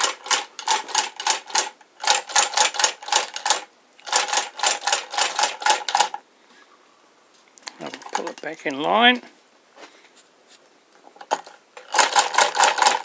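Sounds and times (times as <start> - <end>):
sewing machine clattering: 0.0 - 6.2, 11.2 - 13.0.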